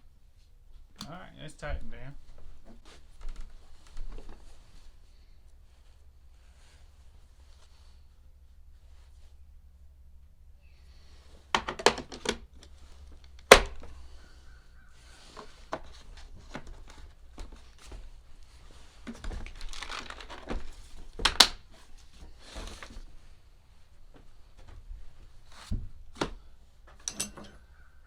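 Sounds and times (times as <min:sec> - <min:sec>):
rustling: 0:02.1 - 0:09.9, 0:12.5 - 0:26.9.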